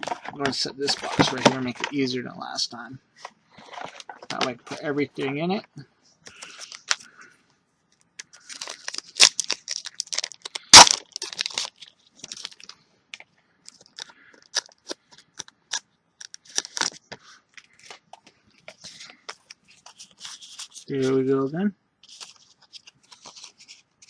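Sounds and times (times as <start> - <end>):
wrapper crinkling and tearing: 8.2 - 12.8, 13.7 - 17.9, 22.0 - 23.9.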